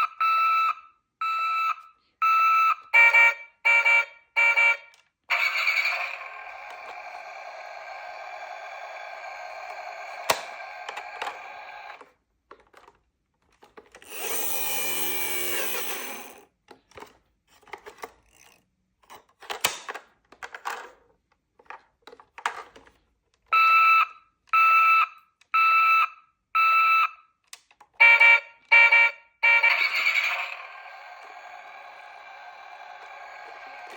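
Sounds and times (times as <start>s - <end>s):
toy electronic beeps: 0.0s - 12.0s, 14.1s - 16.4s, 28.0s - 33.9s.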